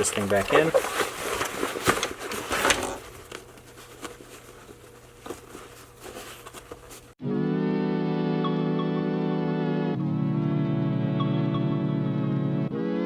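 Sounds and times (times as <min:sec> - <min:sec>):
nylon backpack rustling: 0:00.0 - 0:07.2
synthesizer music: 0:07.2 - 0:13.0.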